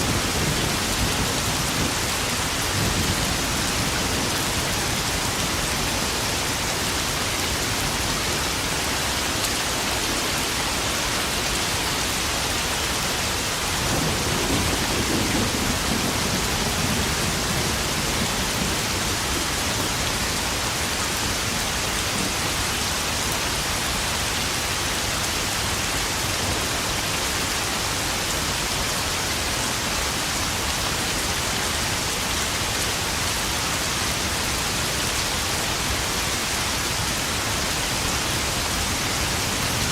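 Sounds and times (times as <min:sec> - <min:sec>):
low rumble of thunder: 0:00.0 - 0:05.1, 0:13.8 - 0:19.6
heavy rain pattering on puddles: 0:00.0 - 0:39.9.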